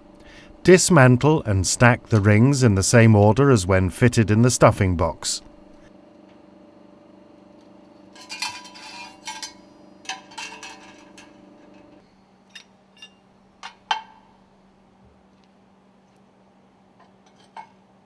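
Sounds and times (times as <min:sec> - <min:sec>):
steady low hum: 0:00.0 - 0:17.0
metal rings clinking and clattering: 0:08.2 - 0:11.4.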